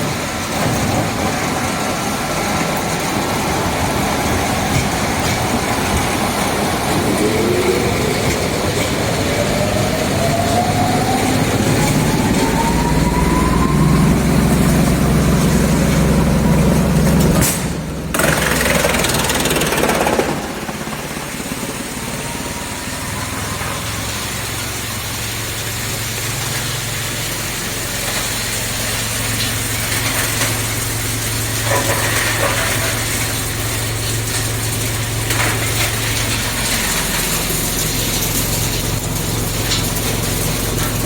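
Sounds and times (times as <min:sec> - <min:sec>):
wood chipper running: 0:00.0 - 0:41.0
heavy low drone: 0:01.0 - 0:18.2
thin whine rising in pitch: 0:05.5 - 0:17.0.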